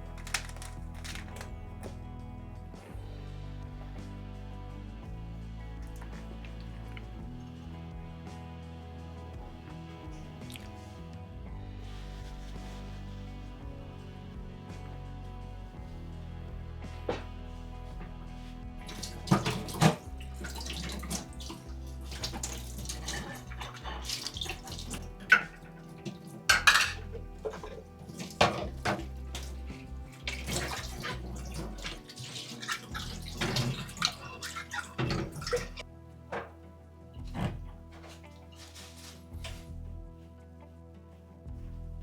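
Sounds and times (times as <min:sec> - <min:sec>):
water running from tap: 0:00.0 - 0:01.6, 0:18.7 - 0:35.8
soft background music: 0:00.0 - 0:42.0
dishes and utensils clinking: 0:18.9 - 0:29.6, 0:30.3 - 0:35.8.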